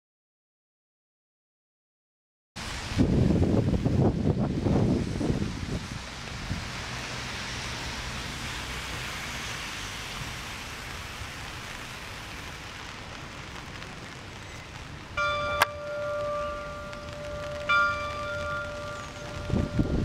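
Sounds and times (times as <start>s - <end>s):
outdoor background hiss: 2.6s - 20.0s
bell-like chime: 15.2s - 20.0s.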